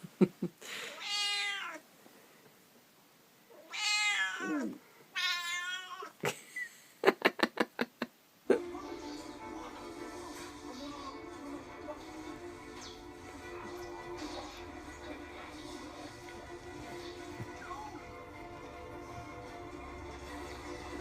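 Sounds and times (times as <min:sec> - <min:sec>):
cat meowing: 0:01.0 - 0:01.8, 0:03.6 - 0:06.2
music: 0:08.5 - 0:21.0.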